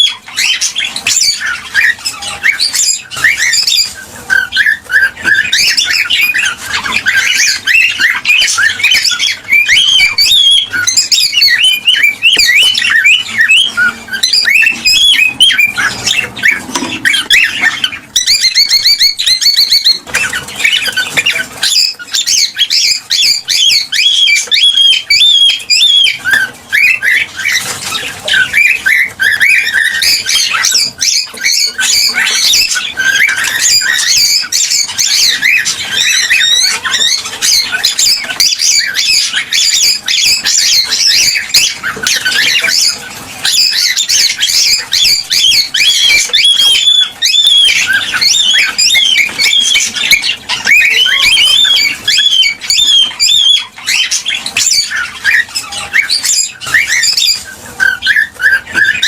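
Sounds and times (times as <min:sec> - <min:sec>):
cockatiels chirping and squawking: 0:00.0 - 0:59.0.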